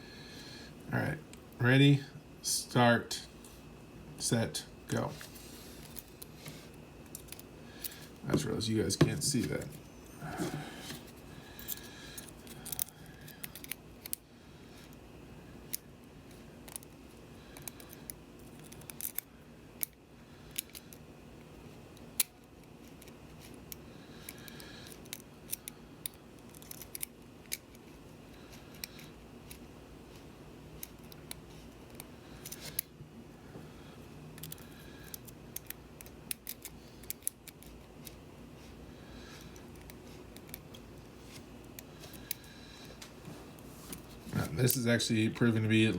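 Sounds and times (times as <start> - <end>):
faint steady hum: 0.0 - 45.9
lock picks clicking and scraping: 11.6 - 14.2, 16.6 - 17.0, 17.6 - 21.0, 22.2 - 27.9, 28.7 - 29.6, 34.3 - 38.2, 39.4 - 40.8.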